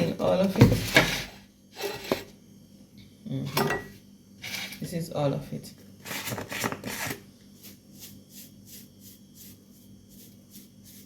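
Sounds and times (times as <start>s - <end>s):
low electrical hum: 0.0s - 11.0s
salt shaker being shaken: 7.6s - 11.0s.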